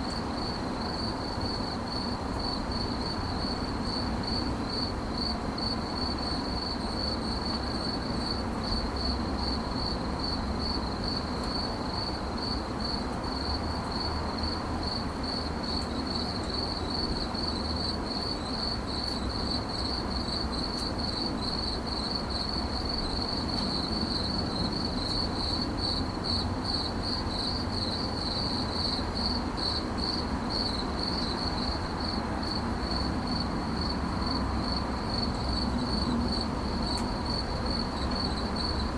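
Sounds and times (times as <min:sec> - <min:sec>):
cricket chirping: 0:00.0 - 0:38.9.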